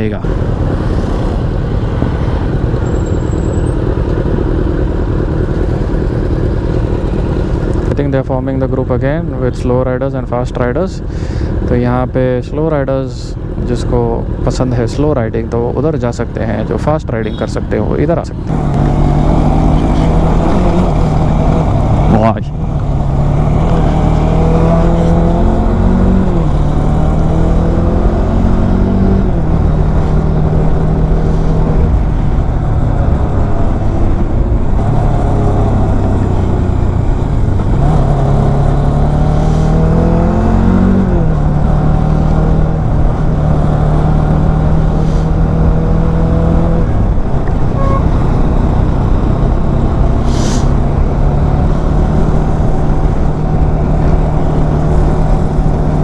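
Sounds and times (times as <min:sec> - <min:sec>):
motorcycle engine accelerating: 0:00.0 - 0:09.8, 0:18.0 - 0:56.0.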